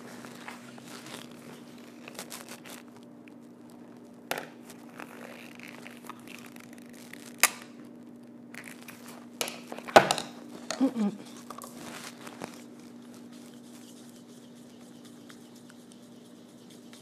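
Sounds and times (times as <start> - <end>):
soft rustling: 0.0 - 7.4, 11.2 - 17.0
steady low hum: 0.0 - 17.0.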